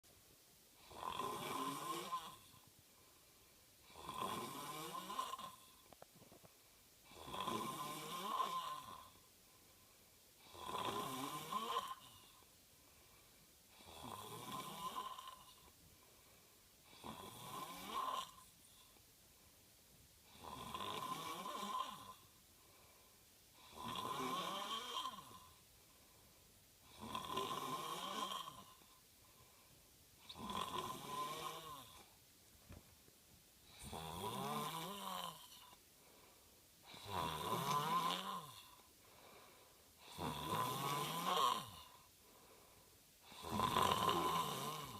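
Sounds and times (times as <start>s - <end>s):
person snoring: 0.8s - 2.6s, 3.8s - 5.9s, 7.0s - 9.2s, 10.4s - 12.4s, 13.7s - 15.7s, 16.8s - 18.9s, 20.3s - 22.3s, 23.6s - 25.6s, 26.8s - 28.9s, 30.2s - 32.1s, 33.7s - 35.8s, 36.8s - 42.1s, 43.2s - 44.9s.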